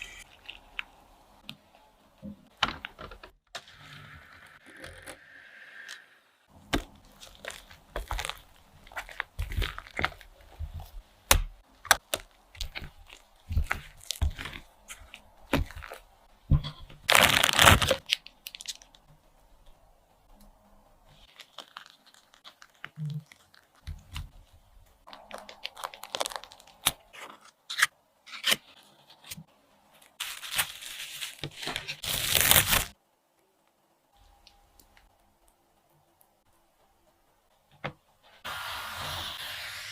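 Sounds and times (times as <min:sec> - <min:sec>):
crinkling and tearing: 0:06.7 - 0:16.1, 0:17.0 - 0:19.1, 0:21.2 - 0:29.4, 0:30.0 - 0:33.0.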